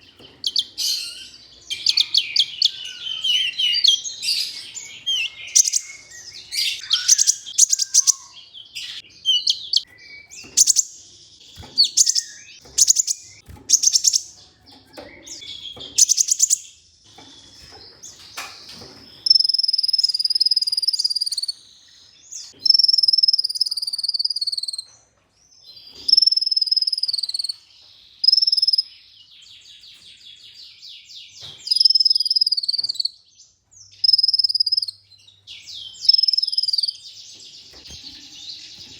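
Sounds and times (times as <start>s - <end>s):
bird chattering trills: 0.0s - 14.4s, 15.1s - 16.7s
high whistled bird notes: 5.1s - 10.9s.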